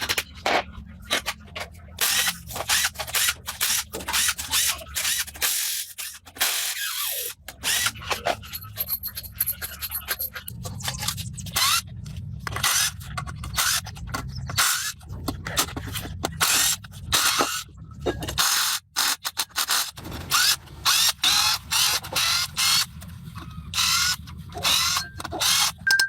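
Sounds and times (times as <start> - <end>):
ratchet-like scraping strokes: 2.0 - 25.9
steady low hum: 20.0 - 26.0.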